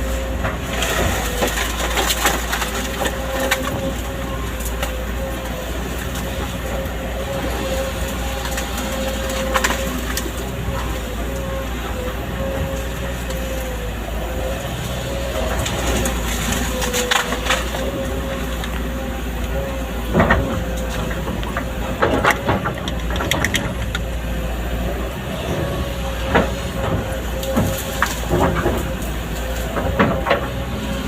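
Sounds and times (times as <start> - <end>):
constant whine: 0.0 - 31.0
excavator engine running: 0.0 - 31.0
sharp cracks and knocks: 0.4 - 4.0, 20.1 - 24.1, 26.2 - 30.6.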